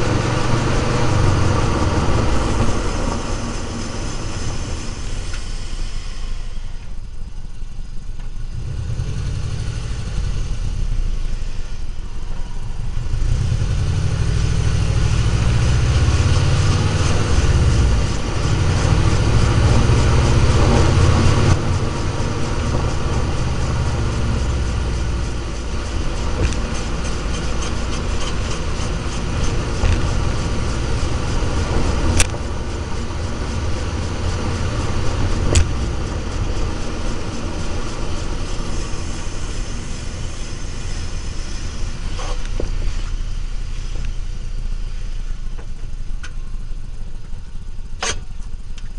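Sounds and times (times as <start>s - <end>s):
car engine running: 0.0s - 48.9s
road noise: 0.0s - 48.9s
sharp click: 48.0s - 48.9s.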